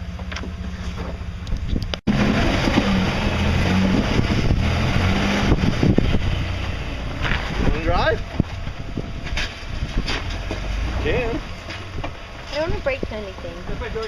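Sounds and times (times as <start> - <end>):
car engine idling: 0.0 - 14.0
wind buffeting microphone: 3.6 - 14.0.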